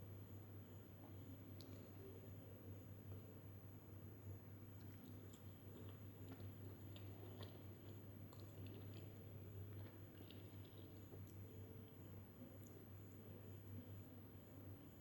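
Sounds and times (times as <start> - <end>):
low steady hum: 0.0 - 15.0
wet chewing mouth clicks: 4.7 - 11.5.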